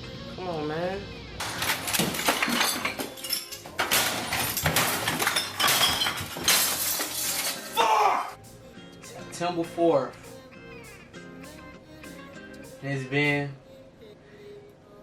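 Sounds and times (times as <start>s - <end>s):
hard parts clinking and clattering: 1.4s - 7.8s.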